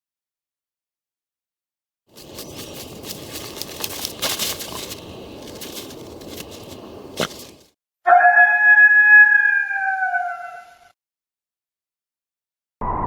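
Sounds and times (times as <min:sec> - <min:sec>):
footsteps crunching in snow: 0:02.1 - 0:07.7.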